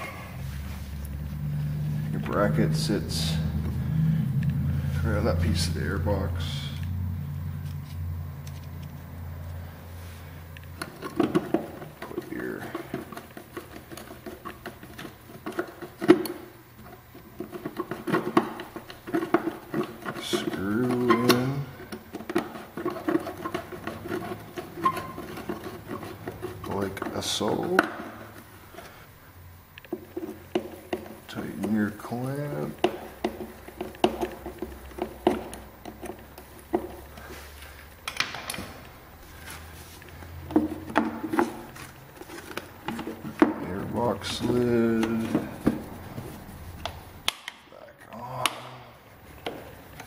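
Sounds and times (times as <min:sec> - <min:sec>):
handling clicks and scrapes: 0:00.0 - 0:50.0.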